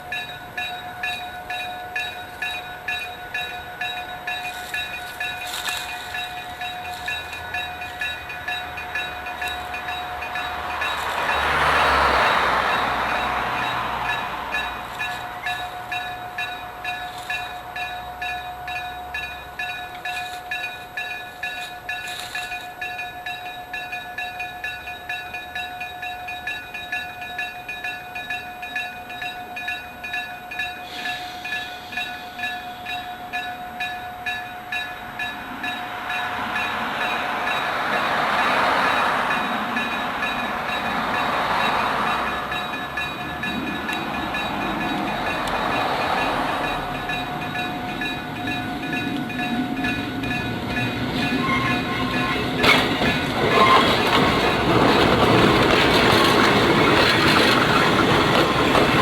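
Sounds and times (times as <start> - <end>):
electric train running: 0.0 - 59.0
level crossing bell ringing: 0.0 - 59.0.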